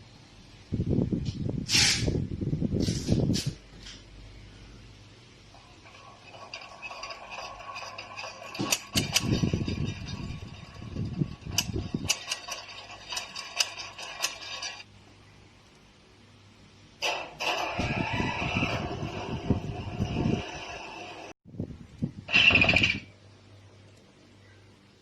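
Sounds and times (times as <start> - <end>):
low rumbling bursts: 17.7 - 22.3.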